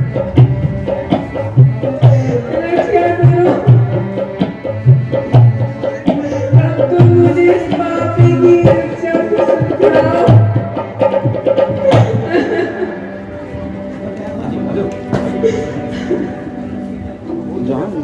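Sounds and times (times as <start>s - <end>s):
hand drum beat: 0.0s - 12.6s
held melodic line: 0.0s - 18.0s.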